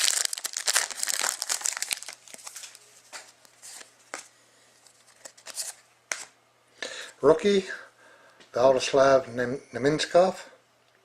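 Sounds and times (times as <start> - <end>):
trading cards rustling and clicking: 0.0 - 6.3.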